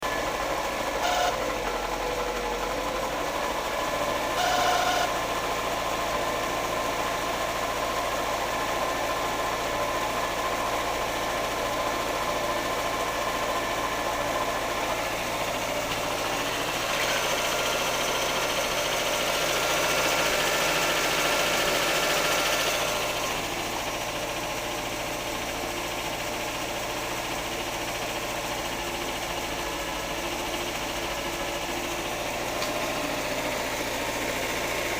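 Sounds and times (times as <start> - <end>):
car engine running: 0.0 - 34.9.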